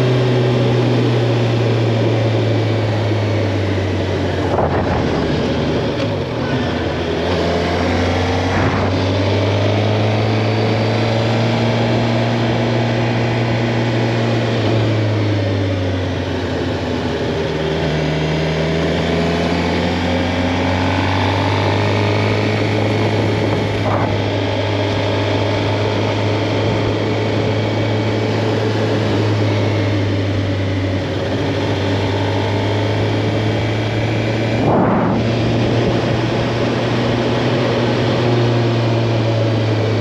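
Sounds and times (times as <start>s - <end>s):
motorcycle engine revving: 0.0s - 40.0s
wind noise: 4.2s - 7.5s, 8.4s - 9.5s, 22.6s - 24.5s, 33.4s - 38.5s.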